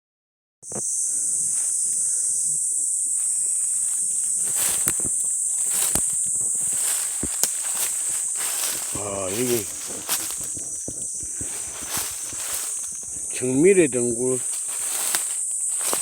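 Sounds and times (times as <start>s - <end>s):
insect chorus buzzing: 0.6s - 16.0s
footsteps through undergrowth: 2.9s - 16.0s.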